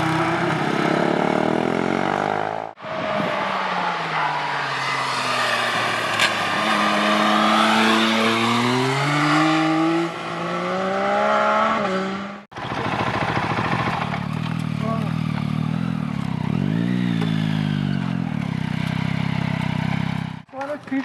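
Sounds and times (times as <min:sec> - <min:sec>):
motorcycle accelerating: 0:00.0 - 0:20.5
motorcycle engine idling: 0:12.5 - 0:21.0.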